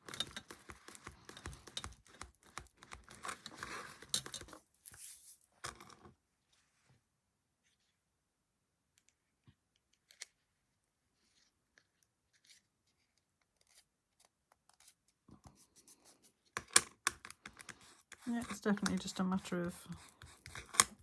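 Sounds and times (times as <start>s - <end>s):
clicks and rustles: 0.0s - 5.0s
small objects ticking and scraping: 0.0s - 6.0s, 16.6s - 21.0s.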